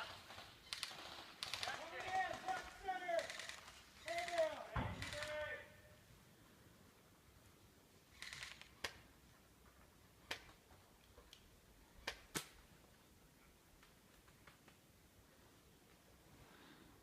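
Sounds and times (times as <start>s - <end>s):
airsoft guns firing: 0.8s - 5.4s.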